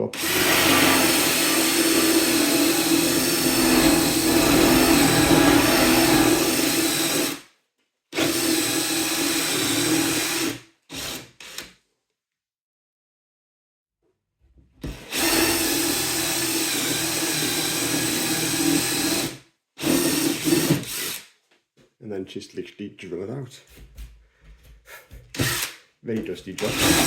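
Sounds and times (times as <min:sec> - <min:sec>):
electric drill boring into wood: 0:00.2 - 0:07.4, 0:08.2 - 0:11.6, 0:14.9 - 0:21.2, 0:25.4 - 0:25.8, 0:26.6 - 0:27.0.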